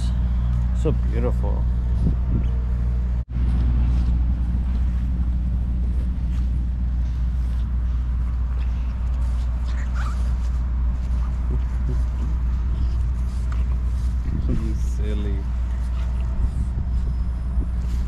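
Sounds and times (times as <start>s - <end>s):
diesel truck engine idling: 0.0s - 18.0s
dog whimpering: 9.6s - 10.4s.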